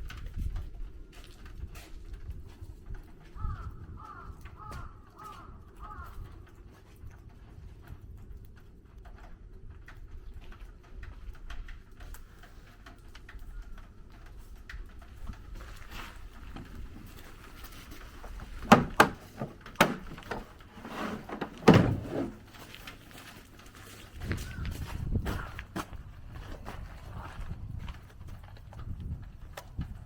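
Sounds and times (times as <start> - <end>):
sharp knocks and thuds: 18.5 - 22.4.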